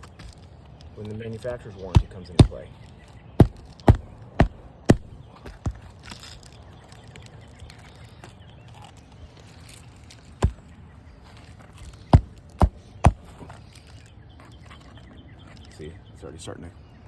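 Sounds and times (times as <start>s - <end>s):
nails hammered into roof shingle: 2.0s - 2.7s, 3.4s - 5.9s, 10.4s - 10.6s, 12.0s - 13.4s.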